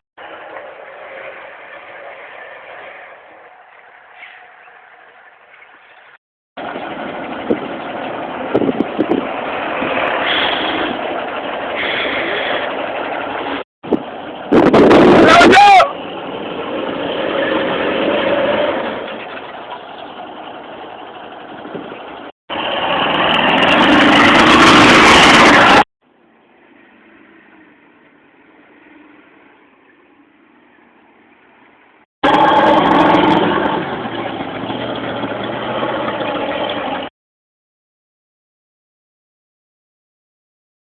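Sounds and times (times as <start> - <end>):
off-road vehicle engine revving: 6.6 - 15.2, 15.9 - 25.8, 32.2 - 37.1.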